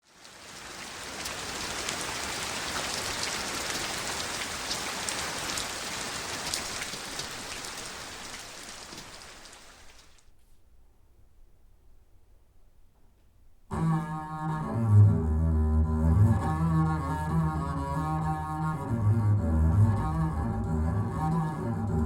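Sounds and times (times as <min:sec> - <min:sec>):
rain falling through loudspeakers: 0:00.0 - 0:10.3
ticking raindrops: 0:00.0 - 0:10.4, 0:13.7 - 0:22.0.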